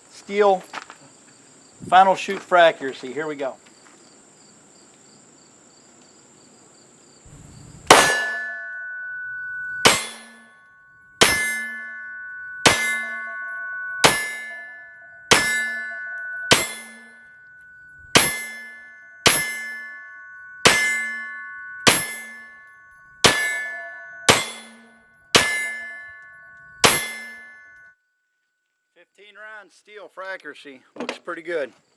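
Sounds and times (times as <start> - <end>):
steel target ringing: 7.3 - 27.9.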